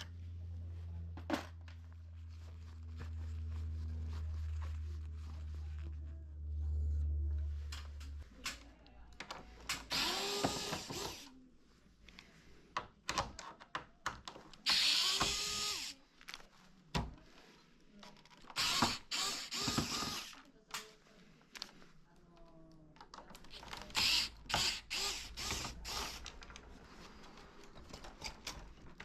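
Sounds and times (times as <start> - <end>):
plastic parts clicking and knocking: 7.7 - 11.3, 12.7 - 17.2, 18.0 - 20.9, 22.4 - 29.0
electric screwdriver motor whine: 9.9 - 11.2, 14.7 - 15.9, 18.6 - 20.4, 23.9 - 26.2.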